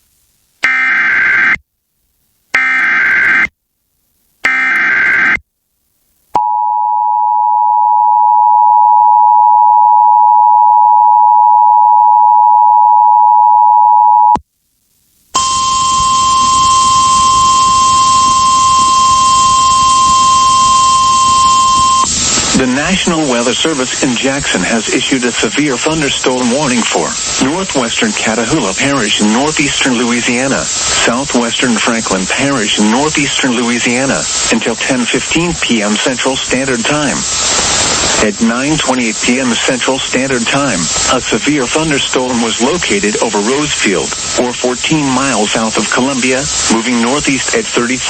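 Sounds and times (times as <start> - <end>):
steady warning tone: 4.5 - 5.4, 15.4 - 37.2
radio hiss: 14.9 - 48.0
two-tone attention signal: 15.4 - 22.1.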